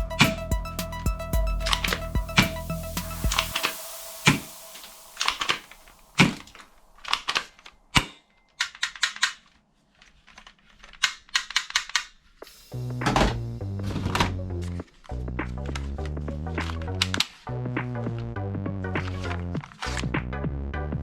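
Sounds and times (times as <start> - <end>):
toy guns clicking and snapping: 7.1 - 12.3.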